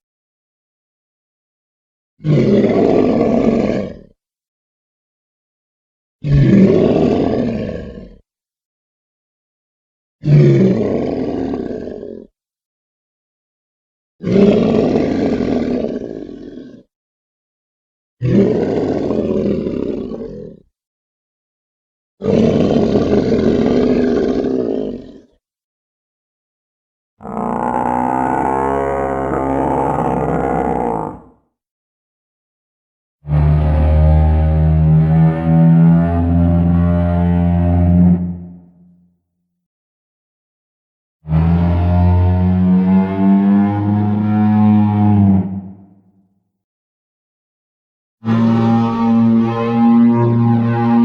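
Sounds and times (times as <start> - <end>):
low roaring dinosaur calls: 27.2 - 31.4.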